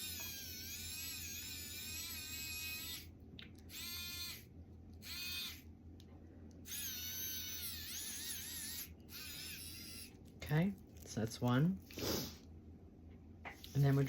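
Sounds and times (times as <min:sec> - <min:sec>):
electric screwdriver whining: 0:05.0 - 0:05.6, 0:06.7 - 0:10.0.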